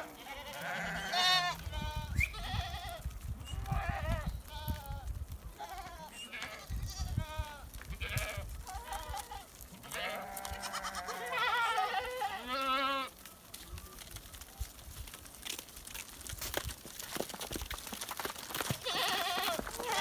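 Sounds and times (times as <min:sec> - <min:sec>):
flock bleating: 0:00.0 - 0:03.0, 0:08.1 - 0:13.1.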